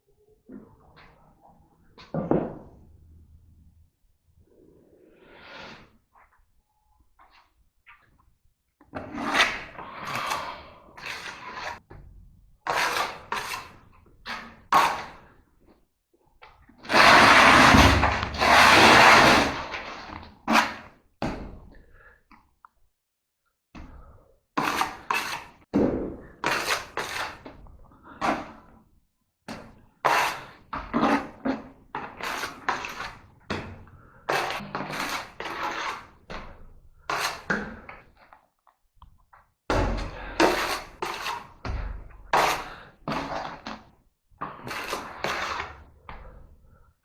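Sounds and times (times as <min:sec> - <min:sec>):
knocks and thuds of drywall work: 0:02.1 - 0:02.7, 0:16.9 - 0:21.7, 0:39.7 - 0:43.9
hand tool scraping drywall: 0:09.0 - 0:11.8, 0:12.7 - 0:15.3, 0:16.8 - 0:20.9, 0:24.6 - 0:25.6, 0:26.4 - 0:27.5, 0:29.6 - 0:38.1, 0:39.7 - 0:43.9, 0:44.5 - 0:46.4.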